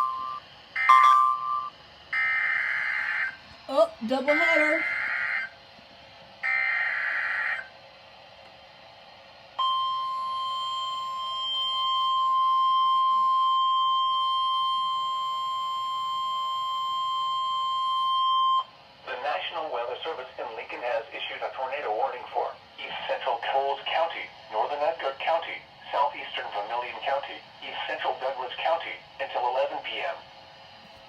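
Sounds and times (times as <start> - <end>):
steady warning alarm tone: 0.0 - 5.6, 6.4 - 7.7, 9.6 - 18.7.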